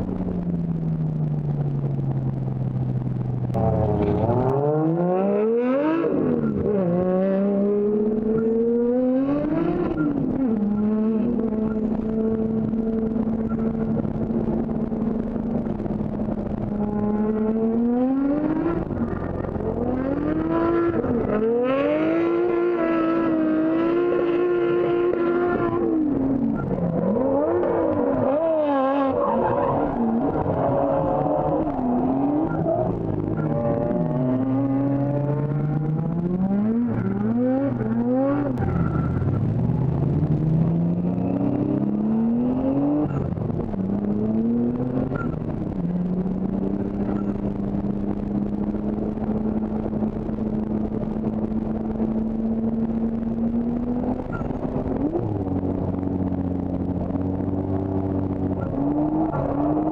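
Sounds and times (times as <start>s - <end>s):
car engine revving hard: 3.6s - 13.4s, 16.8s - 47.2s.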